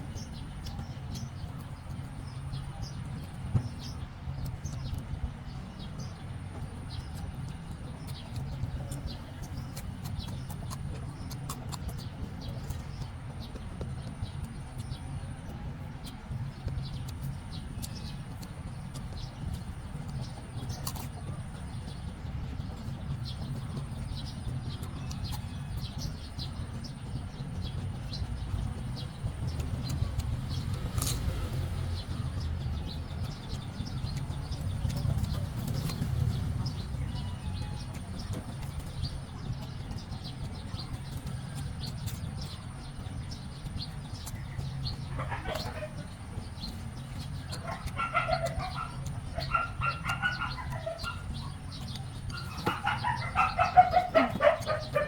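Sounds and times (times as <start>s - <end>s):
chickens clucking: 16.4s - 55.0s.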